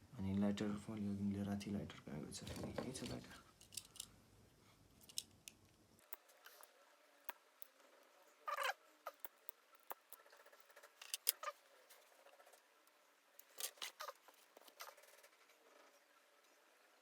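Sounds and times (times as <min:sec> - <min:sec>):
small tools clicking and snipping wires: 0:02.8 - 0:04.1, 0:05.0 - 0:06.7, 0:11.0 - 0:11.5, 0:13.4 - 0:14.0.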